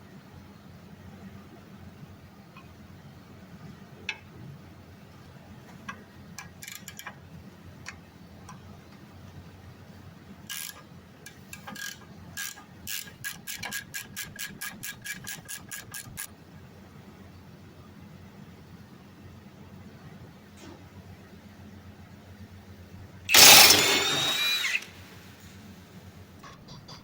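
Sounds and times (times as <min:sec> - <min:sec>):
ratchet wrench clicking: 0:10.5 - 0:10.8, 0:11.5 - 0:16.3, 0:23.3 - 0:24.9.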